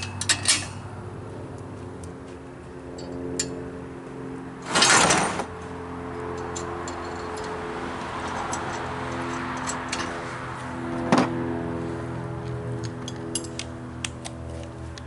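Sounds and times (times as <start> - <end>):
metallic scrape and clatter: 0.0 - 0.8, 4.6 - 5.6, 6.3 - 10.4.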